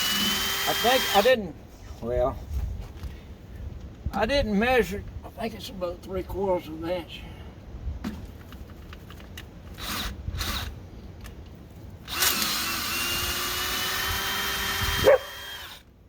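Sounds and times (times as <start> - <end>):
electric drill drilling steel: 0.0 - 1.3, 12.1 - 15.9.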